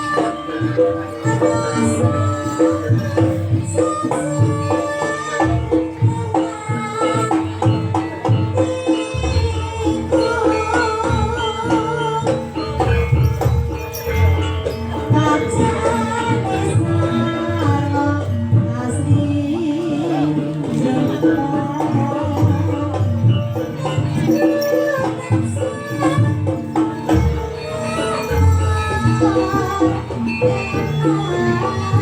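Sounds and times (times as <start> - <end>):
drums and jingling percussion: 0.0 - 32.0.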